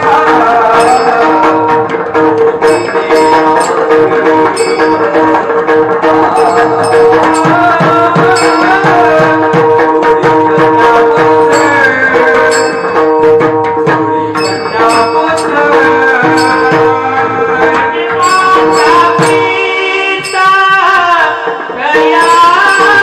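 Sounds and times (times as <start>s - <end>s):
hand drum strokes: 0.0s - 23.0s
wavering melody: 0.0s - 23.0s
small hand cymbals ringing: 0.2s - 9.7s, 11.1s - 23.0s.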